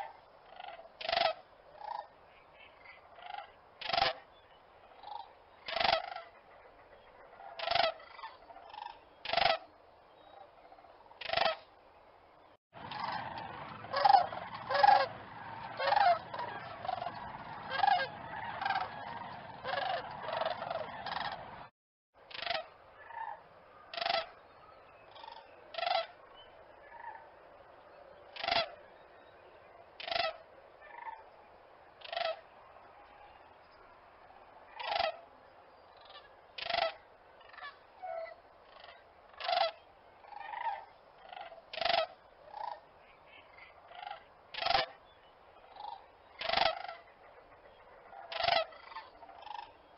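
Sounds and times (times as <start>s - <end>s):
cranes honking: 12.8s - 21.7s.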